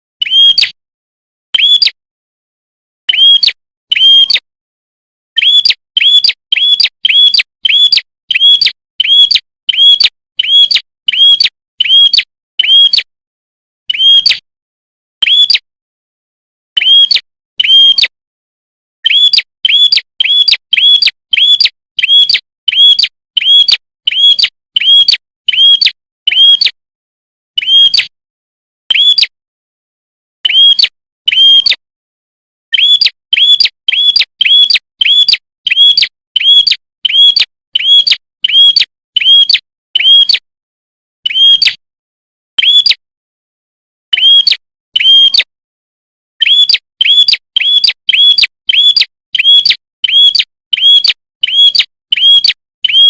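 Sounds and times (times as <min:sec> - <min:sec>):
bird sharp chirping: 0:00.2 - 0:00.8, 0:01.6 - 0:02.0, 0:03.1 - 0:04.4, 0:05.4 - 0:13.1, 0:13.9 - 0:14.4, 0:15.2 - 0:15.7, 0:16.8 - 0:18.2, 0:19.0 - 0:26.8, 0:27.6 - 0:28.1, 0:28.9 - 0:29.3, 0:30.5 - 0:31.8, 0:32.7 - 0:40.4, 0:41.2 - 0:41.8, 0:42.6 - 0:43.0, 0:44.1 - 0:45.5, 0:46.4 - 0:53.0.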